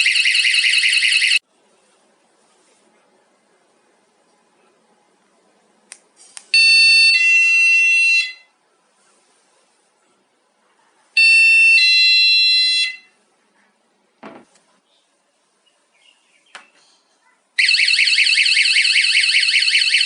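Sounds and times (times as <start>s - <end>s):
electronic alarm blast: 0.0s - 1.4s, 17.6s - 20.0s.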